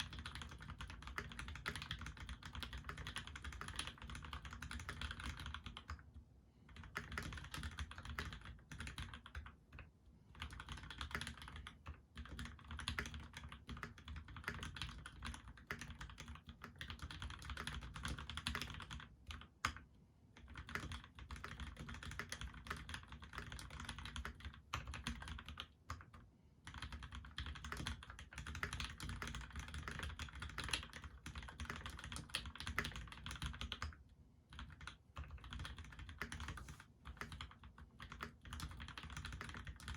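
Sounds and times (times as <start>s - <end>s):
typing on mechanical keyboard: 0.0s - 6.1s, 6.7s - 39.9s.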